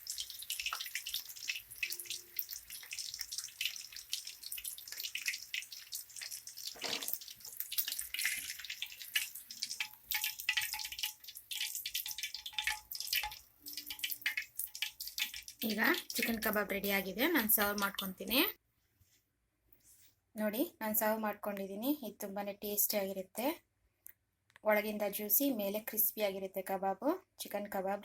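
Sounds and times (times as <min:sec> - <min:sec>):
meat deep-frying in hot oil: 0:00.0 - 0:18.1
oil crackling pops: 0:02.7 - 0:16.3.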